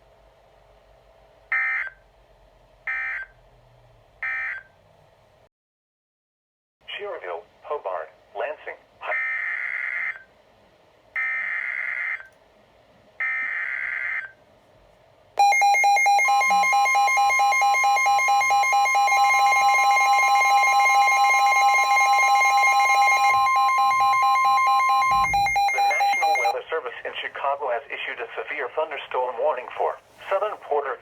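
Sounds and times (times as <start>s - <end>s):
higher alert tone: 15.4s - 26.5s
steady alert tone: 15.4s - 26.5s
warbling data bursts: 16.3s - 26.5s.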